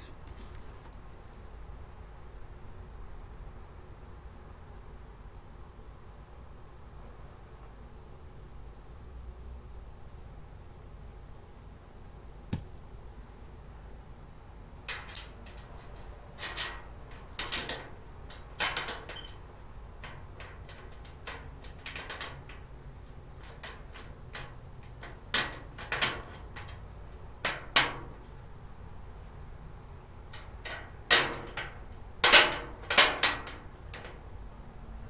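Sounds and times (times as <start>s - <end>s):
cart parts clicking and knocking: 14.9s - 26.8s, 27.4s - 28.2s, 30.4s - 34.2s.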